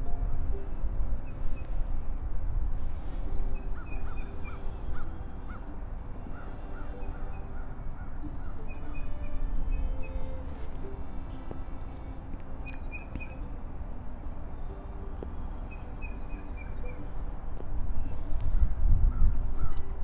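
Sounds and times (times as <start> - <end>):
steady low rumble: 0.0 - 20.0.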